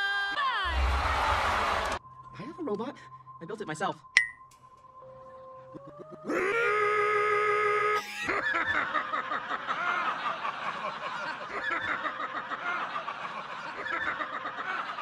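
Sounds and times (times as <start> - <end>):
crowd laughing and chattering: 0.7 - 2.0, 8.4 - 15.0.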